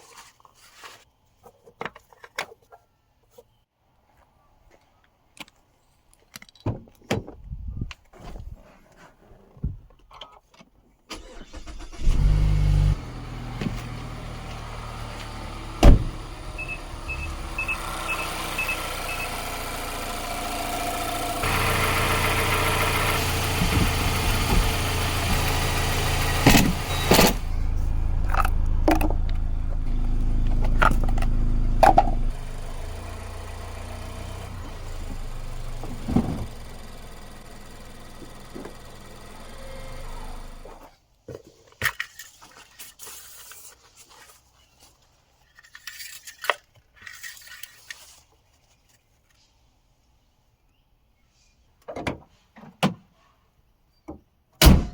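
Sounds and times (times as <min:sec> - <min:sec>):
car engine starting and idling: 0:11.1 - 0:40.8.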